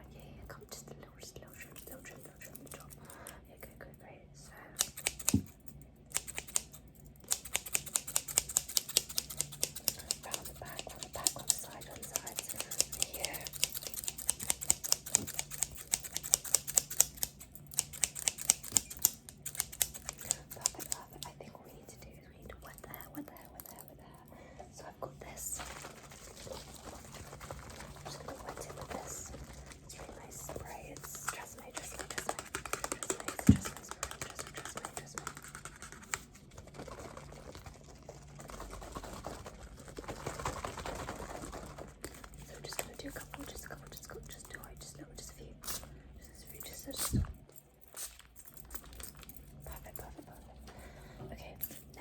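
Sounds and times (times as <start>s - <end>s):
rapid tapping and clicking: 25.6s - 42.9s
rapid sharp clicks and taps: 30.6s - 36.3s.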